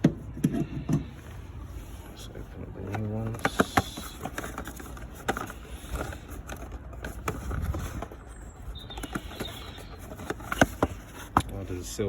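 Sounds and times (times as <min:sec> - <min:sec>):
packaging clicks and crinkles: 0:02.8 - 0:11.7.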